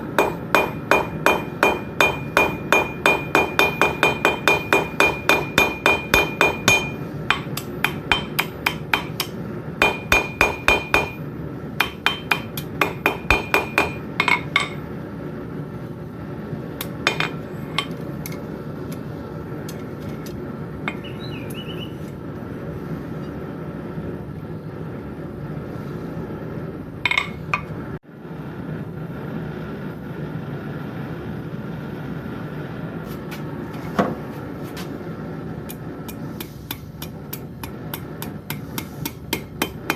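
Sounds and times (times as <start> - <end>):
steady noise: 0.0 - 39.9
hammer striking anvil: 0.2 - 11.2, 11.8 - 14.8, 17.1 - 18.0, 27.1 - 27.7, 36.4 - 39.9.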